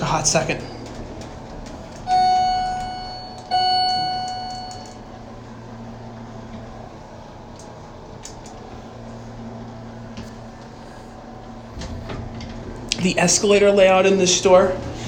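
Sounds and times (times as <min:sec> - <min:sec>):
steady low hum: 0:00.0 - 0:15.0
elevator arrival chime: 0:02.0 - 0:06.9.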